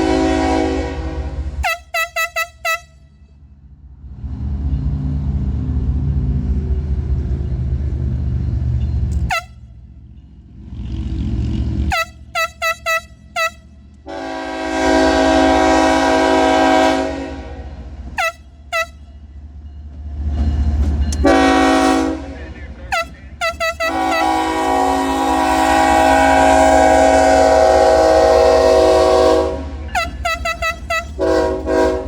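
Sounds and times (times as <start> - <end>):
locomotive air horn: 0.0 - 3.3, 9.2 - 9.8, 11.9 - 19.2, 21.2 - 32.0
low rumble of train: 0.0 - 32.0.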